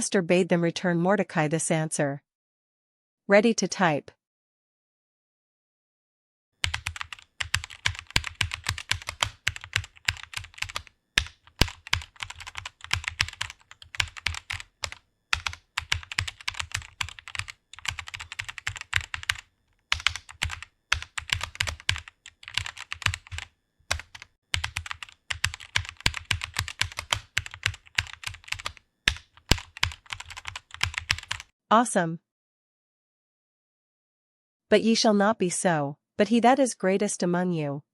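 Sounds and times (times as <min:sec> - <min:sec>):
computer keyboard typing: 0:06.6 - 0:31.5.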